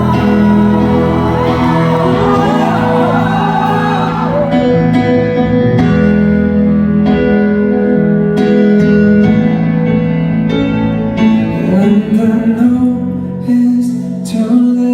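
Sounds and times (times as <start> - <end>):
audience whooping: 0.0 - 5.0
pop ballad keyboard chords: 0.0 - 14.9.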